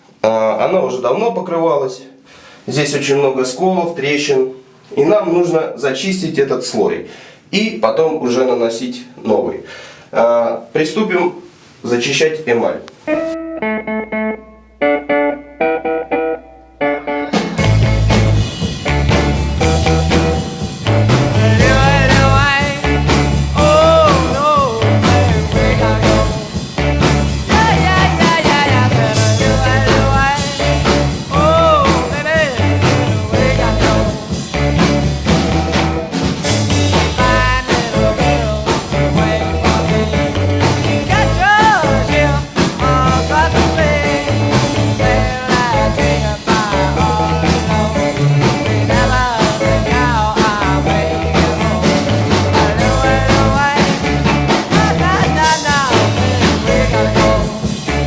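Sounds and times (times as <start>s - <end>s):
rock music: 13.0s - 58.0s.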